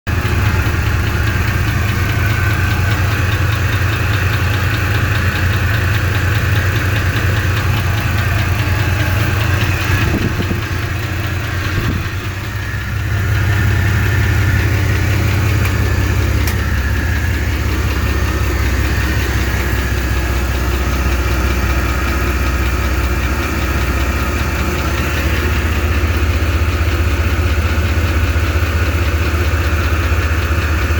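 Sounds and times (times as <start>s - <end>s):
engine idling with knocking: 0.0s - 30.9s.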